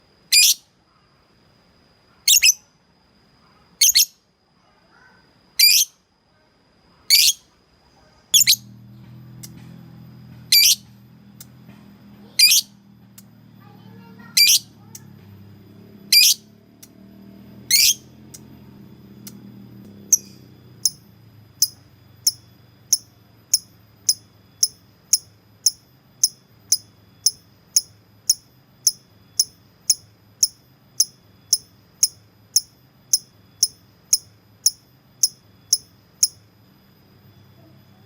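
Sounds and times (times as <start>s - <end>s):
low steady hum: 6.1s - 38.0s
bird giving shrill calls: 10.5s - 10.8s, 17.7s - 18.1s.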